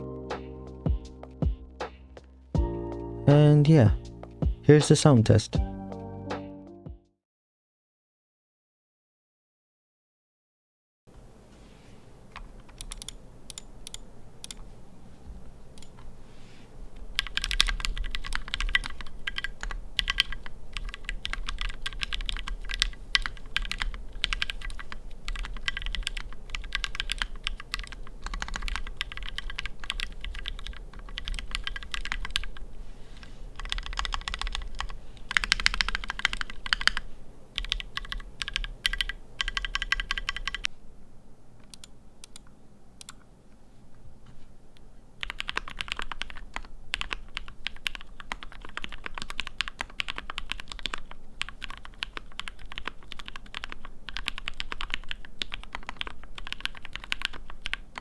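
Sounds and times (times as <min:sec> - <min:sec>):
mechanical keyboard typing: 0:12.3 - 0:14.7, 0:15.7 - 0:16.1, 0:17.0 - 0:32.6, 0:33.6 - 0:40.7, 0:45.2 - 0:58.0.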